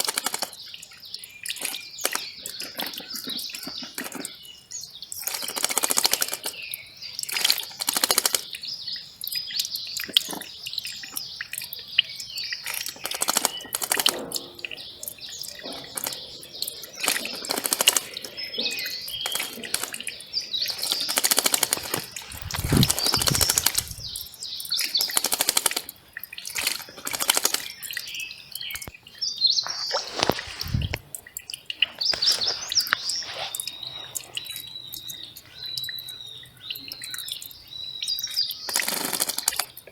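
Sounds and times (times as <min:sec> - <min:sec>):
small birds chirping: 0:00.0 - 0:39.9
low rumbles: 0:21.9 - 0:24.4.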